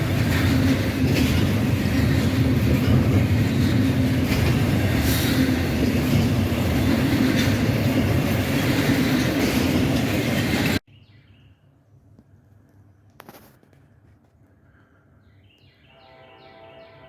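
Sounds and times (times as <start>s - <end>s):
freight train wheels on rail: 0.0s - 10.8s.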